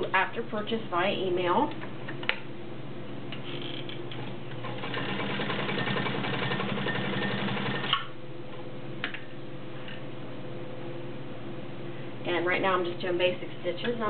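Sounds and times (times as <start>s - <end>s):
sewing machine running: 4.2s - 8.0s.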